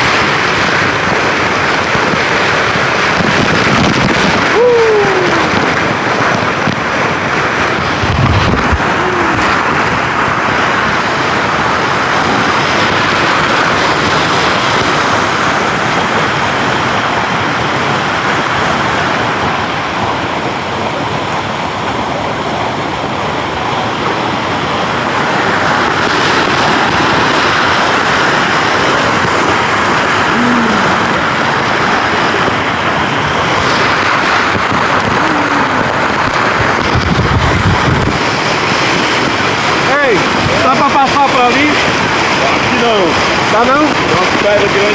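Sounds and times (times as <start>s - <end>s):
waterfall rushing over rocks: 0.0s - 44.9s.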